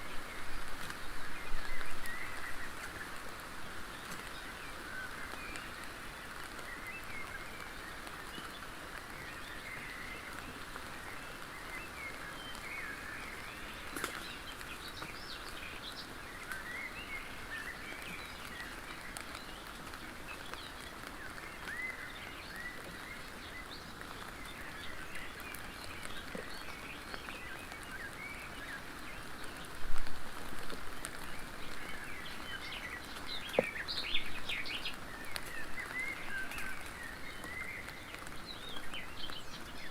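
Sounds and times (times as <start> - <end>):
background hiss: 0.0 - 39.9
birds singing: 0.0 - 39.9.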